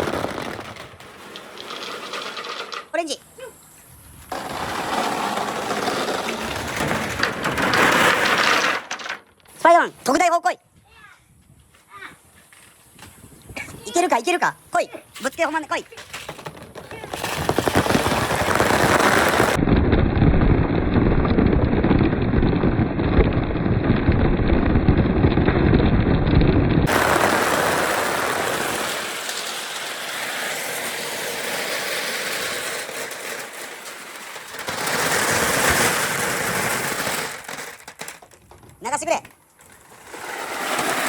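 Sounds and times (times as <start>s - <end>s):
marbles clattering down wooden slide: 0.0s - 3.2s, 4.3s - 10.2s, 16.0s - 19.6s, 26.8s - 41.0s
rushing water hiss: 26.9s - 32.7s.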